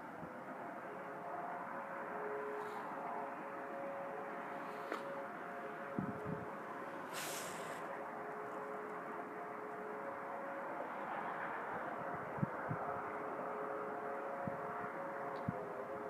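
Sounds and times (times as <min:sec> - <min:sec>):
distant steam whistle chord: 0:00.0 - 0:16.0
background hiss: 0:07.0 - 0:07.9.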